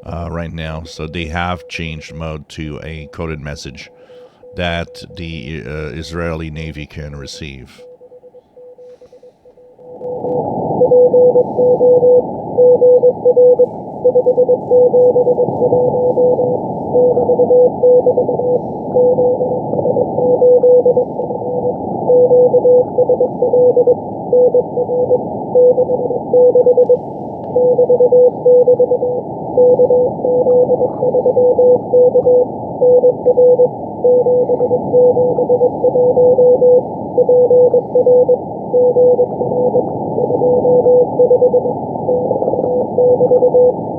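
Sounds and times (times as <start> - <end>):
radio band hiss: 0.0 - 7.9
morse code tone: 0.0 - 10.2, 10.8 - 43.9.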